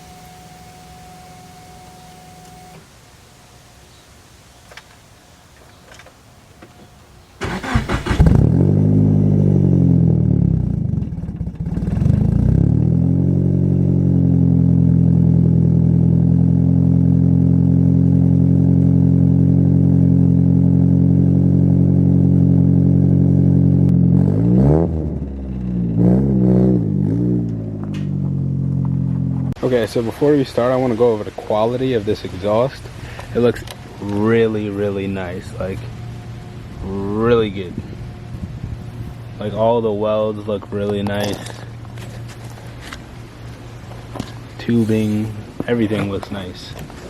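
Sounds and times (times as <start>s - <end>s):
car engine revving: 0.0s - 2.8s, 7.4s - 29.6s
car engine starting and idling: 0.0s - 2.9s, 7.3s - 30.4s, 32.0s - 47.0s.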